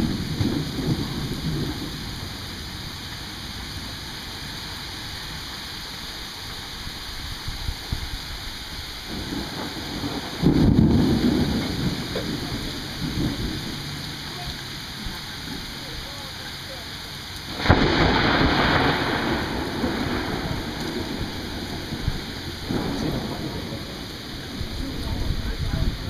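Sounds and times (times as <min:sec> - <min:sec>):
rolling thunder: 0:00.0 - 0:04.0, 0:09.0 - 0:14.4, 0:17.5 - 0:26.0
rain hissing: 0:00.0 - 0:26.0.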